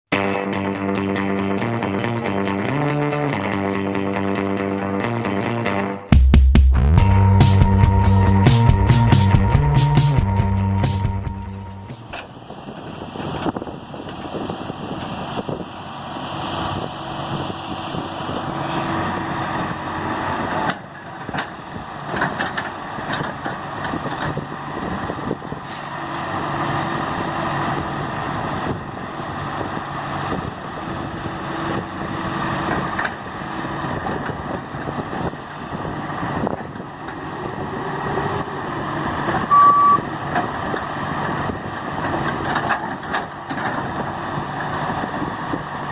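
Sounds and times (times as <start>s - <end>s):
excavator diesel engine running: 6.8s - 45.9s
short high beep: 39.4s - 40.1s.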